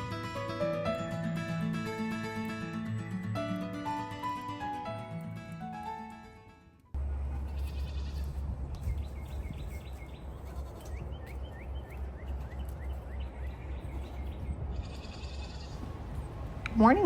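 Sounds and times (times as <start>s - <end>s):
wind rumbling on microphone: 7.1s - 17.0s
goat bleating: 7.3s - 8.4s, 10.3s - 11.0s, 14.7s - 15.8s.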